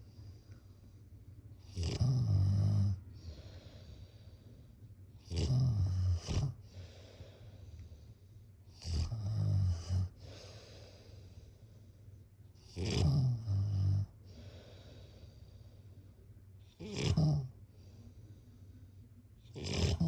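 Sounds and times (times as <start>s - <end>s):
loud snores: 1.7s - 3.0s, 5.2s - 6.6s, 8.7s - 10.5s, 12.6s - 14.1s, 16.7s - 17.5s, 19.5s - 20.0s
faint breathing: 2.9s - 5.0s, 6.5s - 8.7s, 9.7s - 12.4s, 14.0s - 16.8s, 17.6s - 19.4s.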